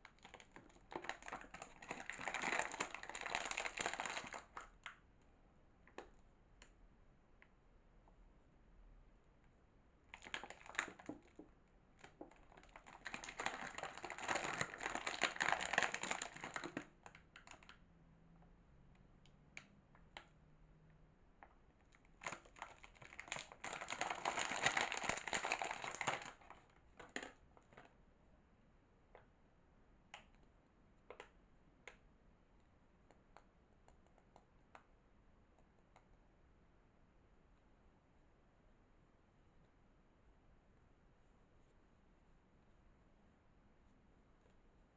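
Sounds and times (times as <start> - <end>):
wrapper crackling and rustling: 0.0 - 4.7, 10.1 - 11.4, 12.0 - 17.7, 22.0 - 27.9.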